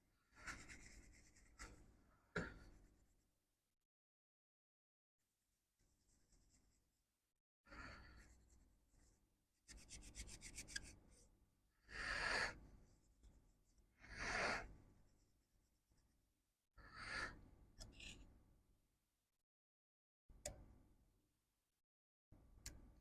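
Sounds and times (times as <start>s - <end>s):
rapid scratches: 9.7s - 11.0s
scrubbing on circuit board: 9.7s - 11.0s.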